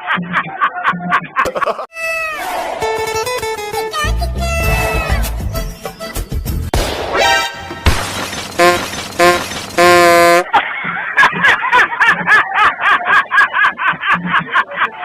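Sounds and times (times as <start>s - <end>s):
upbeat music with steady beat: 5.2s - 6.7s, 7.9s - 10.5s
air horn blasts: 8.6s - 10.5s.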